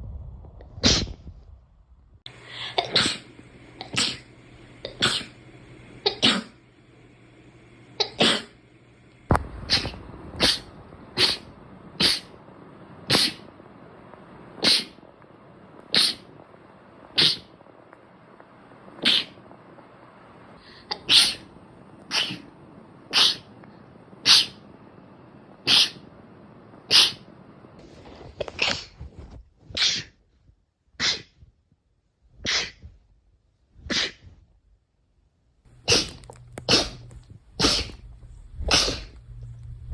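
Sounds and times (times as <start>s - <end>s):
short sharp sneezes: 29.7s - 30.2s, 31.0s - 31.4s, 32.4s - 32.9s, 33.8s - 34.4s, 37.6s - 38.0s, 38.6s - 39.1s.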